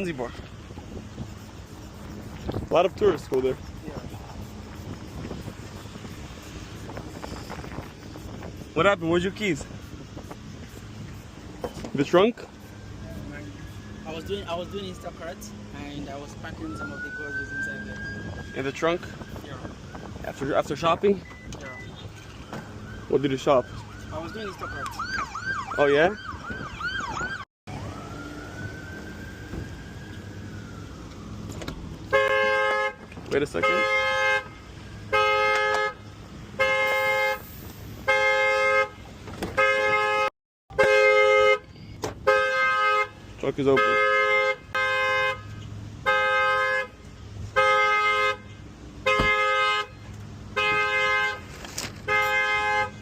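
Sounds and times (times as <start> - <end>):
siren slow wail: 11.3 - 32.6
emergency siren yelp: 12.0 - 32.2
car alarm horn honking: 32.1 - 33.0, 33.6 - 36.0, 36.6 - 37.4, 38.1 - 47.0, 47.6 - 50.0, 50.6 - 53.0.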